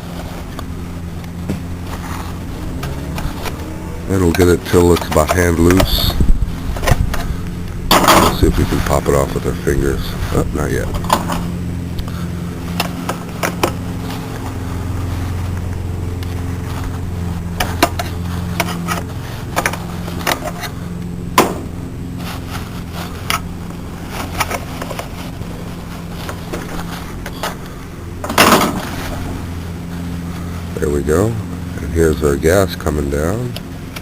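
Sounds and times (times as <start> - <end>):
low hum: 0.0 - 34.0.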